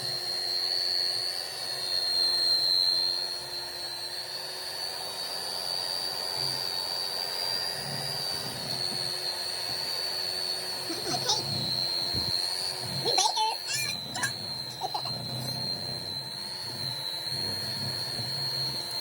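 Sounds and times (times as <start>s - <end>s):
electric mixer whirring: 0.0s - 19.0s
person speaking: 13.1s - 15.6s.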